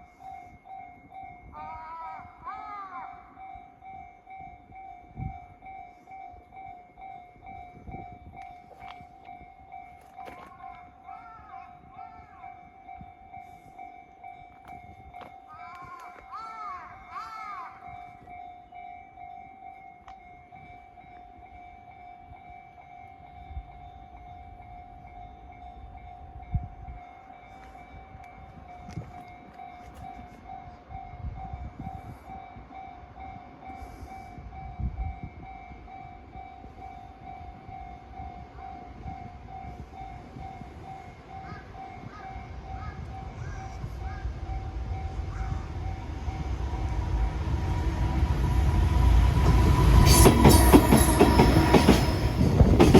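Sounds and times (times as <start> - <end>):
level crossing warning bell: 0.0 - 52.9
approaching train rumble: 20.5 - 52.9.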